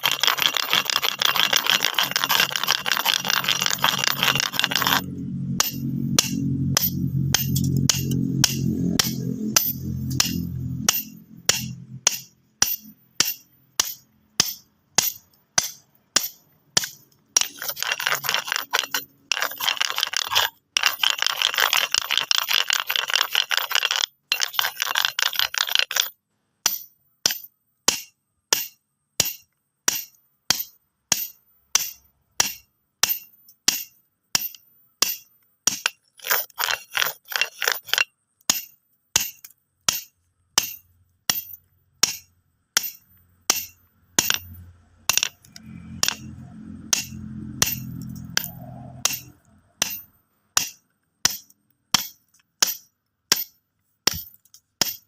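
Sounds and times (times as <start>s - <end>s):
rattling clicks of stones: 0.0s - 10.9s, 11.5s - 27.5s, 29.3s - 55.0s.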